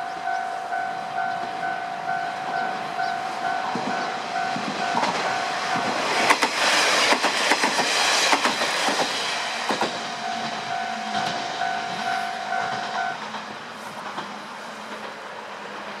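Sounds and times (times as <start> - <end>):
level crossing warning bell: 0.0 - 6.1, 9.9 - 13.2
train wheels clattering over rails: 1.2 - 16.0.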